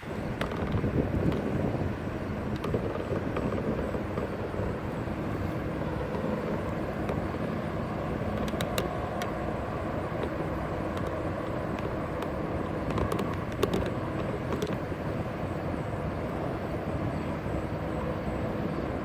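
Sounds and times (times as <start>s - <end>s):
traffic rumble: 0.0s - 19.0s
sharp clicks: 8.3s - 9.4s, 10.1s - 14.9s.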